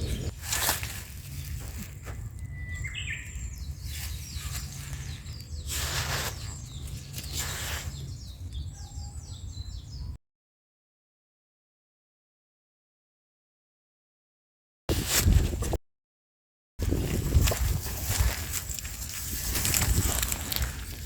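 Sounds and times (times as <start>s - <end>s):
small birds chirping: 0.0s - 10.2s.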